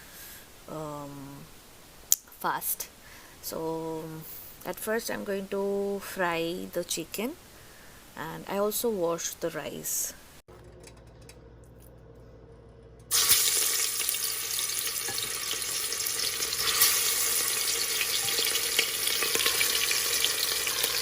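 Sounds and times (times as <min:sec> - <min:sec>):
chicken sizzling in hot oil: 0:13.1 - 0:21.0.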